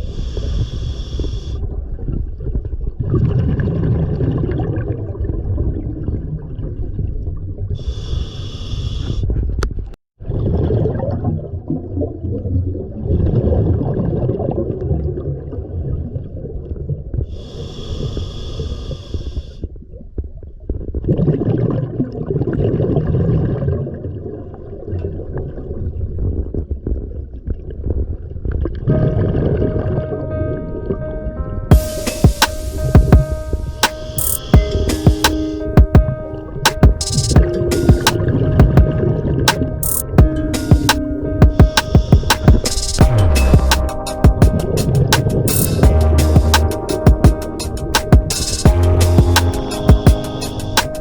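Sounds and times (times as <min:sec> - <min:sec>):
regulator hissing inhale: 0:00.0 - 0:01.6, 0:07.8 - 0:09.2, 0:17.3 - 0:19.6, 0:31.8 - 0:34.6
music: 0:28.9 - 0:51.0.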